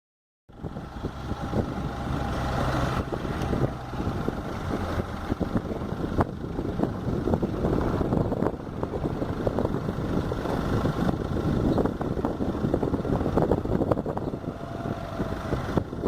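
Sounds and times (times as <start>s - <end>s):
engine running steadily: 0.5s - 16.0s.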